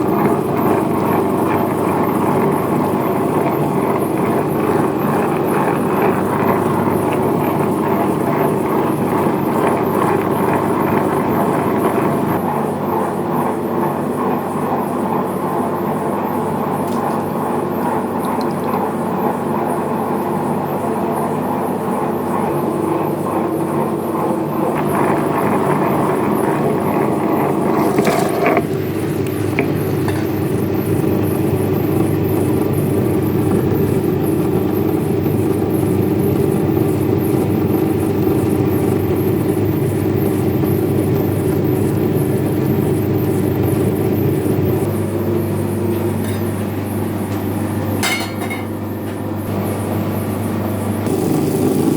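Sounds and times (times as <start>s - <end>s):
machine humming: 24.7s - 51.9s.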